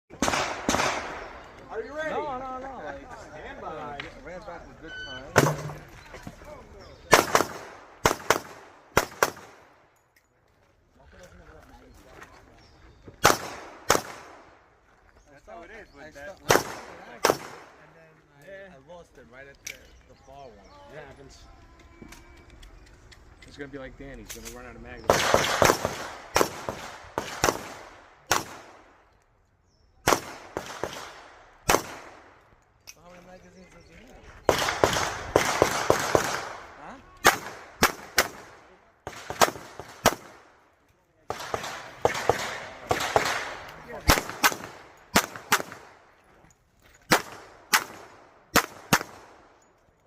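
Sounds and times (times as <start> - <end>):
pistol shots echoing: 0.1 - 1.6, 7.1 - 9.8, 13.2 - 14.6, 16.5 - 17.8, 25.1 - 29.0, 30.0 - 32.4, 34.5 - 40.6, 41.3 - 46.1, 47.1 - 49.6.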